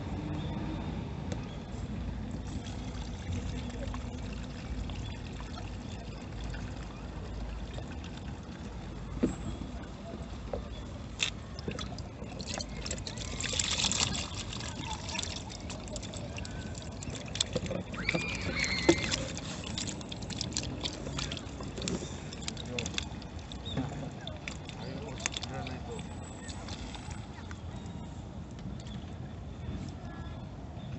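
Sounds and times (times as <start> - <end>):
water trickling faintly: 1.4 - 29.0.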